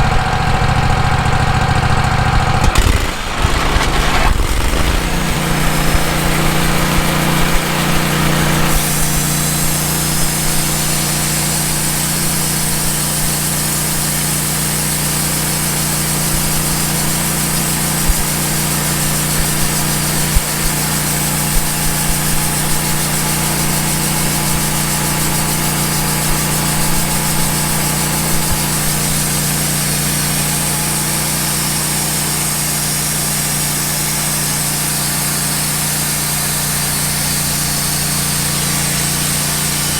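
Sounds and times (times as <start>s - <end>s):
band sawmill cutting log: 0.0s - 39.9s
high hiss: 2.8s - 33.6s, 36.4s - 39.9s.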